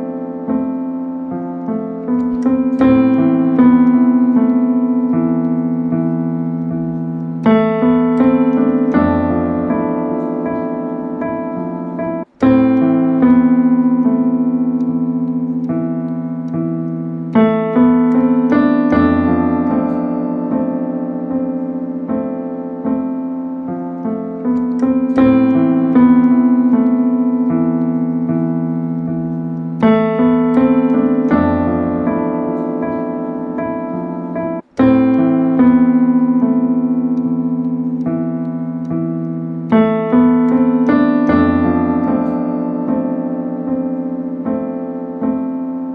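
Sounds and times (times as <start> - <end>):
slow piano chords: 0.0 - 45.9.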